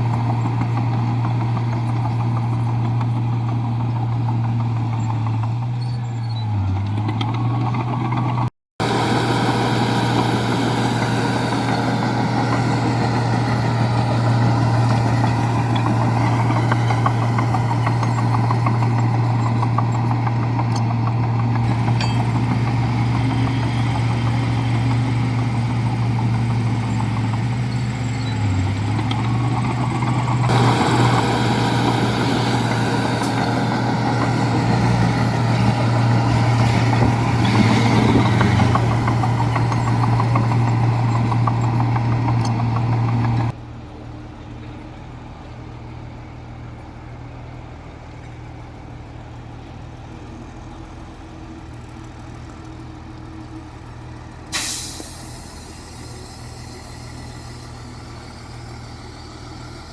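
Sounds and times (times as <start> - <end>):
bulldozer diesel engine: 0.0 - 59.9
rattling and scraping: 30.4 - 43.5
air brake hiss: 54.5 - 59.9.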